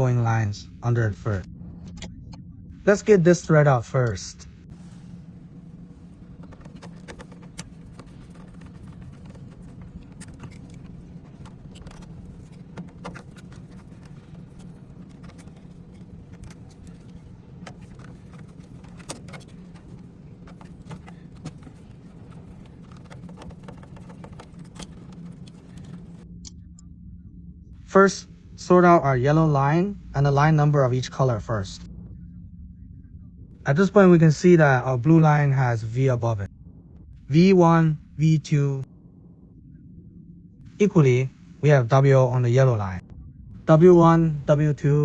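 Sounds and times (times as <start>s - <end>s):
low hum: 0.0s - 45.0s
wires clicking and tapping: 6.4s - 26.6s.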